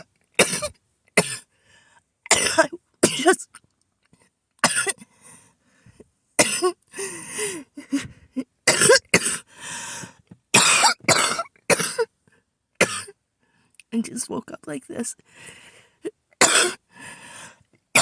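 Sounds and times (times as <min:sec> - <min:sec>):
person coughing harshly: 0:00.0 - 0:01.5, 0:02.3 - 0:03.4, 0:04.6 - 0:05.0, 0:06.4 - 0:06.8, 0:08.7 - 0:09.5, 0:10.6 - 0:12.1, 0:12.8 - 0:13.2, 0:16.4 - 0:16.8.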